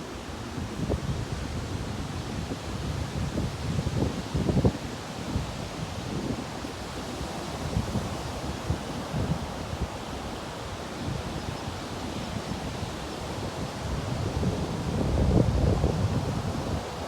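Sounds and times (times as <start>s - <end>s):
ocean surf washing on beach: 0.0s - 17.0s
wind buffeting microphone: 11.0s - 17.0s.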